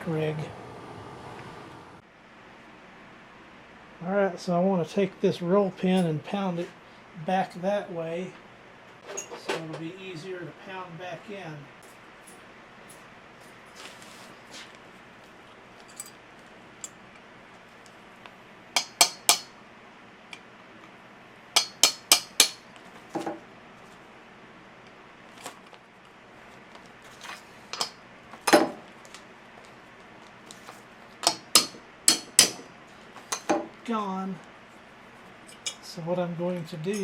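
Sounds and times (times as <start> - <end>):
hammer tapping metal punch: 18.8 - 19.5, 21.6 - 22.6, 31.2 - 32.7.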